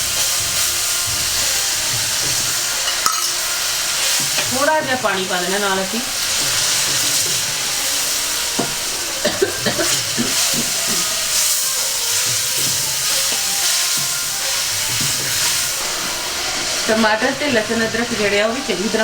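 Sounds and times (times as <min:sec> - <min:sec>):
masala sizzling in a pan: 0:00.0 - 0:19.0
spoon knocking against pan: 0:01.0 - 0:05.2, 0:08.6 - 0:11.4, 0:12.0 - 0:16.2.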